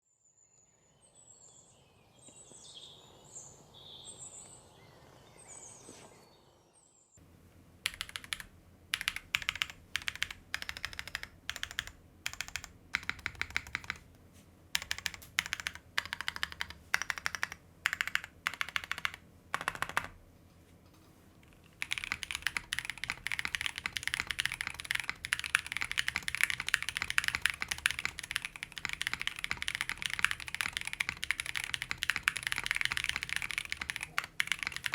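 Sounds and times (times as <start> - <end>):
mechanical keyboard typing: 7.8 - 14.1, 14.7 - 20.2, 21.4 - 34.9.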